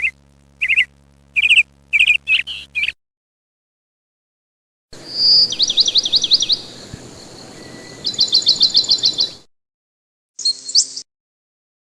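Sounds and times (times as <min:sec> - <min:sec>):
songbird chirping: 0:05.0 - 0:09.5.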